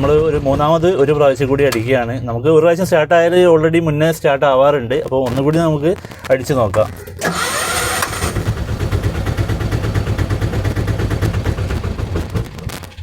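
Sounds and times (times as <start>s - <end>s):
diesel engine knocking: 0.0s - 2.0s, 7.1s - 13.0s
engine starter cranking: 6.8s - 13.0s.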